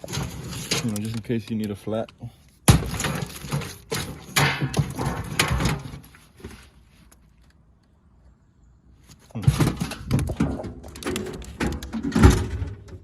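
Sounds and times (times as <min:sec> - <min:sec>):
objects knocking and clattering: 0:02.7 - 0:06.6, 0:09.4 - 0:13.0.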